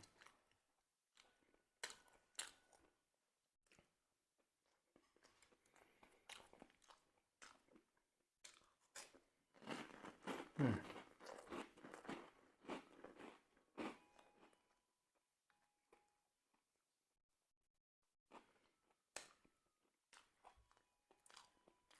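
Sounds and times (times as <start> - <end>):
chewing and crunching crispy bread: 0.0 - 14.8, 18.3 - 21.9.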